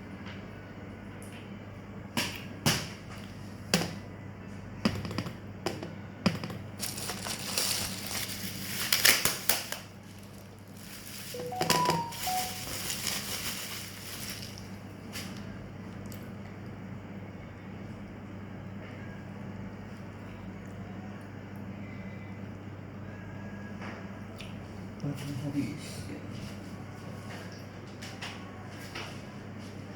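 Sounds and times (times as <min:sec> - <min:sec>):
low steady hum: 0:00.0 - 0:29.9
knocks and clicks on packaging: 0:04.9 - 0:07.7
packaging crinkling: 0:06.8 - 0:15.3.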